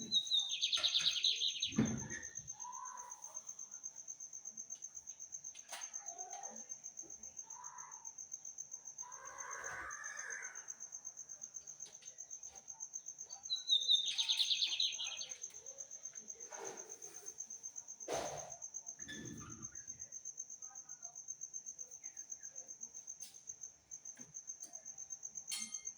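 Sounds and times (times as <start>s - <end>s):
bird singing rapid notes: 0.0s - 2.4s, 13.4s - 15.5s
high insect trill: 0.0s - 25.9s.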